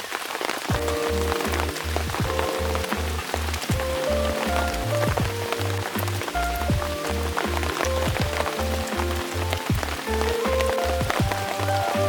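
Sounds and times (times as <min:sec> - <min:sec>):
heavy rain: 0:00.0 - 0:12.0
music with pulsing bass beat: 0:00.7 - 0:12.0.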